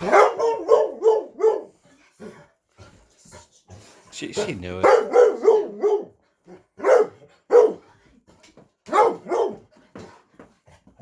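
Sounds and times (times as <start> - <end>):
dog barking: 0.0 - 1.8, 4.4 - 7.9, 8.9 - 9.7.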